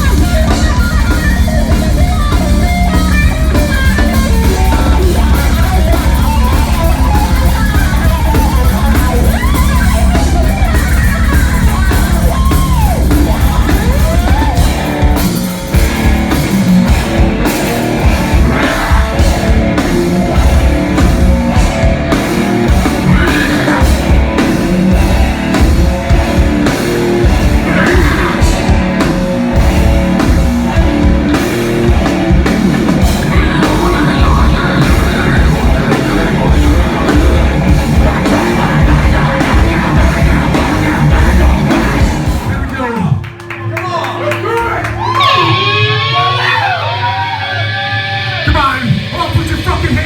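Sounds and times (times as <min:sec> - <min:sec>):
person singing: 0:00.0 - 0:10.3, 0:18.0 - 0:21.7, 0:22.6 - 0:25.1, 0:27.2 - 0:29.1, 0:33.0 - 0:43.0
busy drumming: 0:00.0 - 0:46.6, 0:48.4 - 0:50.0
distorted guitars: 0:00.0 - 0:50.0.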